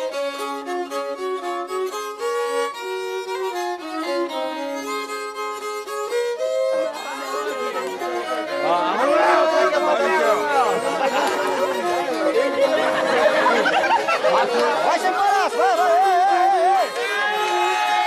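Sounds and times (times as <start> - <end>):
fiddle melody: 0.0 - 18.0
many voices chattering: 3.5 - 18.0.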